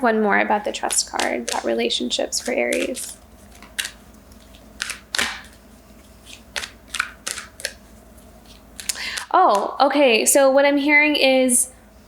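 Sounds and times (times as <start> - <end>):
cards shuffled and tapped: 0.8 - 9.8.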